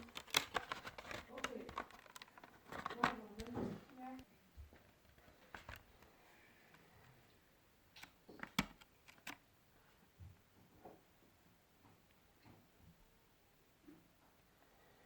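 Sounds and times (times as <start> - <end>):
small plastic and metal parts clicking: 0.0 - 3.5.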